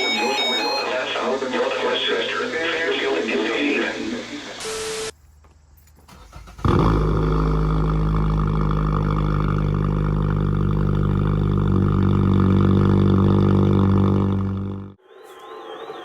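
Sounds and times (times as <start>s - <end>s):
distorted alarm tone: 0.0s - 5.1s.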